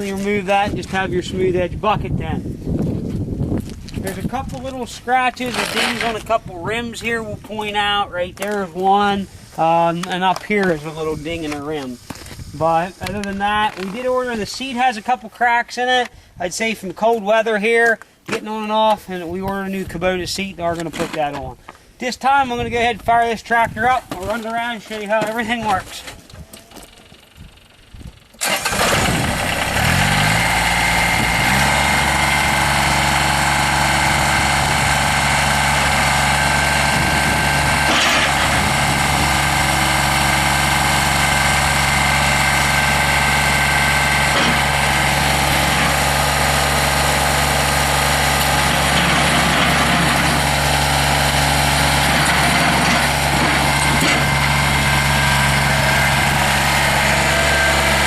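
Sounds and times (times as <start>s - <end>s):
diesel tractor engine starting and idling: 4.0s - 14.7s, 26.8s - 58.0s.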